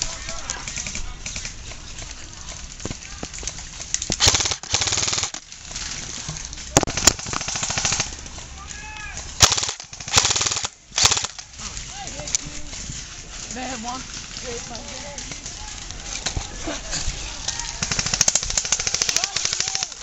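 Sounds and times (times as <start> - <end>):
airsoft guns automatic bursts: 0.1 - 1.6, 4.1 - 5.5, 6.8 - 8.2, 9.4 - 11.5, 17.6 - 20.0.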